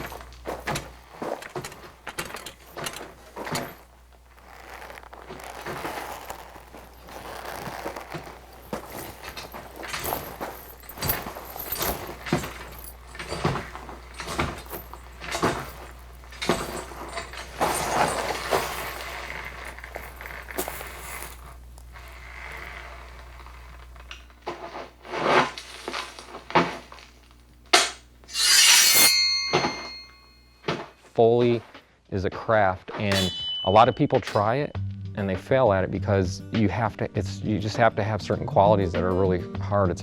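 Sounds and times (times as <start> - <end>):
knocks and clinks clattering: 0.0 - 21.7, 27.8 - 30.9, 33.1 - 34.5
ringing crash: 28.3 - 30.6, 33.1 - 34.5.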